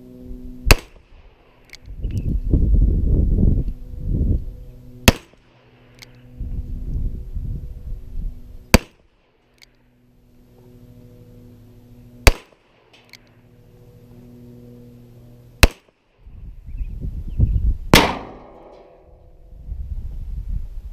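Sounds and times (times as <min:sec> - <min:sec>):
revolver gunshots: 0:00.7 - 0:01.8, 0:05.0 - 0:05.8, 0:08.7 - 0:09.2, 0:12.2 - 0:13.0, 0:15.6 - 0:16.1, 0:17.9 - 0:19.1.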